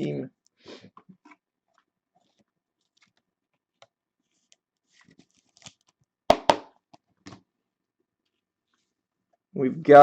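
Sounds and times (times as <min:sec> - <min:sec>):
cards rustling: 0:01.8 - 0:06.1.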